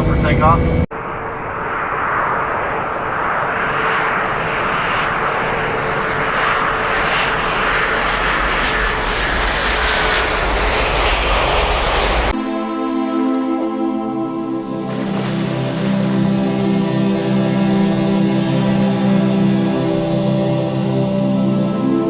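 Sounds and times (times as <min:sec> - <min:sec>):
aircraft engine rushing: 0:00.0 - 0:22.0.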